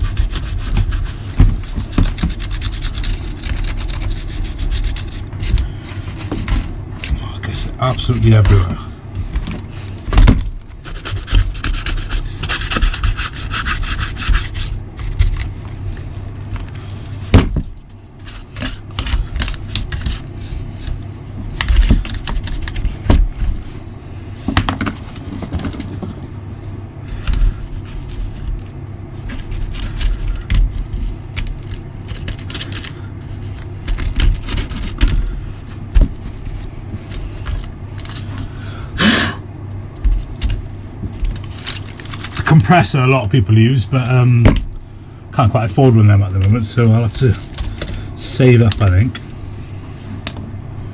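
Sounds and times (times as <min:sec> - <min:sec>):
brush scrubbing: 0:00.0 - 0:10.0, 0:10.7 - 0:17.3, 0:18.2 - 0:24.3, 0:26.6 - 0:35.1, 0:35.7 - 0:38.5, 0:45.9 - 0:50.2.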